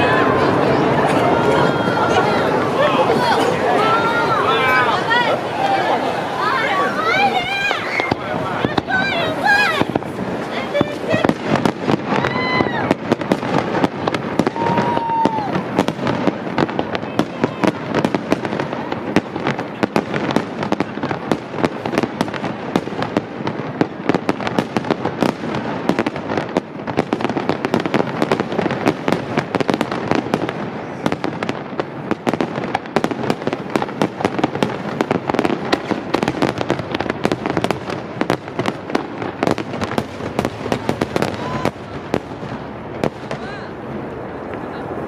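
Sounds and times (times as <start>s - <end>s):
fireworks bursting: 0.0s - 45.0s.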